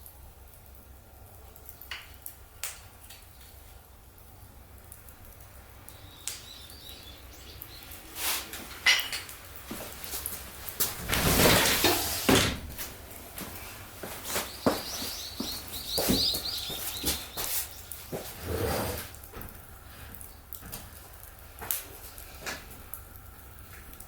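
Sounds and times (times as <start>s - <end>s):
fire crackling and popping: 0.0s - 24.0s
thin high wavering chirps: 5.9s - 8.2s, 14.4s - 18.1s
rustling: 7.0s - 22.8s.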